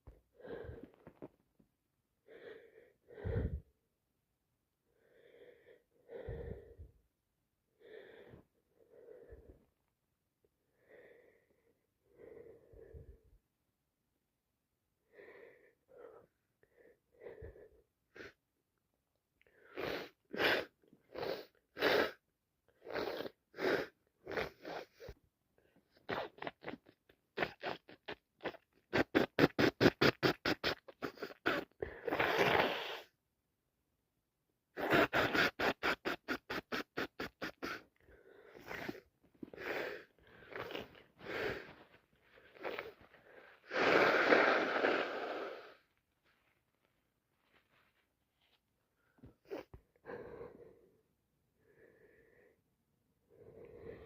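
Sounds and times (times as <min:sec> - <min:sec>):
person sneezing: 0:34.8 - 0:37.9.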